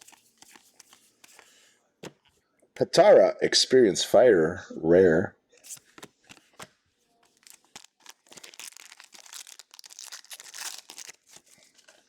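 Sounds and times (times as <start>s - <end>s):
foil wrapper crinkling and tearing: 7.2s - 12.0s.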